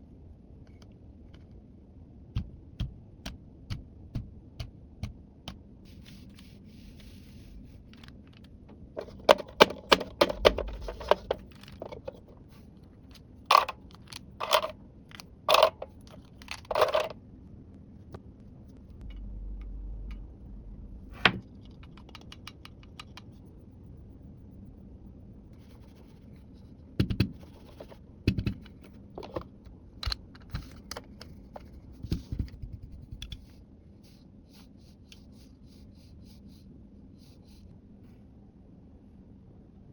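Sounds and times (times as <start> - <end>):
plastic toy pieces clicking: 13.5 - 17.1.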